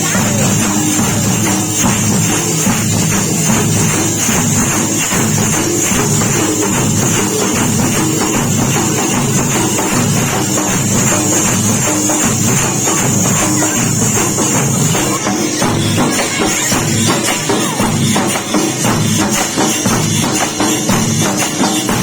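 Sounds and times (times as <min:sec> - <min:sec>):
drums played fast: 0:00.0 - 0:22.0.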